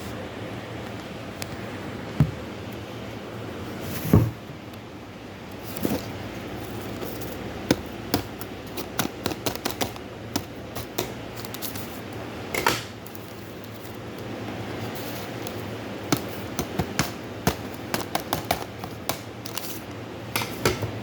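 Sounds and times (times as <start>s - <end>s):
small objects clicking and tapping: 7.0s - 11.8s, 15.4s - 20.8s.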